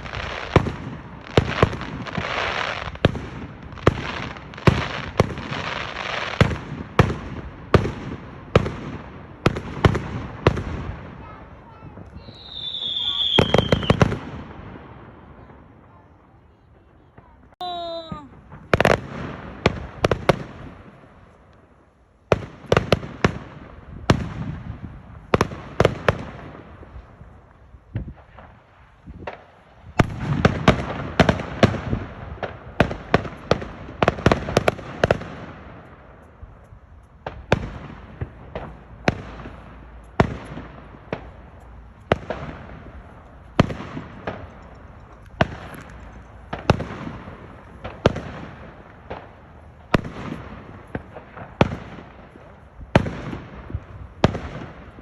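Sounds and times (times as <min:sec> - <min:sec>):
fireworks bangs: 0:00.0 - 0:55.0.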